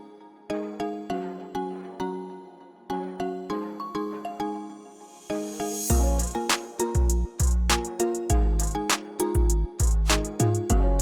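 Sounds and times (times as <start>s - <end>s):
drums: 5.8s - 11.0s
bass: 5.9s - 11.0s.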